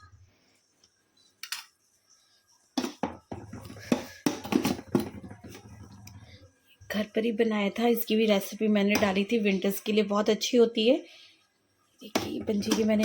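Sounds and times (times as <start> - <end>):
utensils and dishes clattering: 2.8 - 6.2, 12.2 - 13.0.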